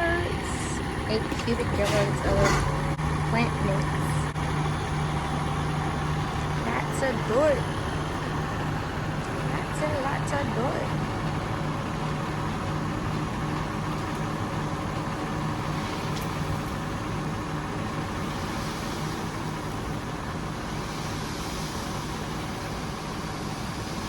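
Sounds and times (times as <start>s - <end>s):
low motor hum: 0.0s - 24.0s
constant noisy wash: 5.8s - 11.7s.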